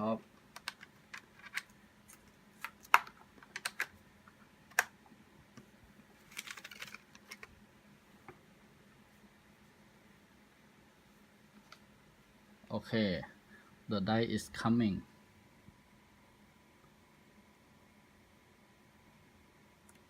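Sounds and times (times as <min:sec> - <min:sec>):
hands clicking and tapping laptop: 0:00.4 - 0:01.7, 0:02.6 - 0:03.9.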